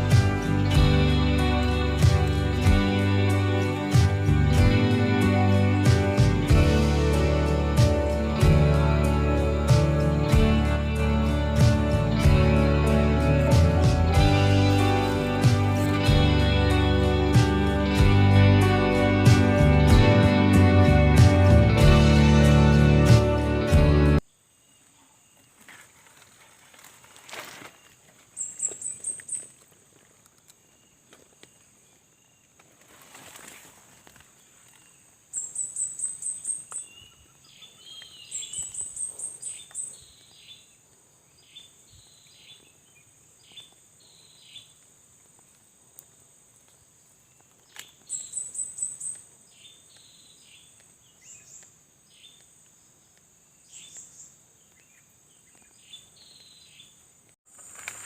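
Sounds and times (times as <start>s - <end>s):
birds chirping rapidly: 27.8s - 29.6s, 35.3s - 44.8s, 47.6s - 52.5s
birds whistling: 28.4s - 29.4s, 35.4s - 40.6s, 48.1s - 50.6s.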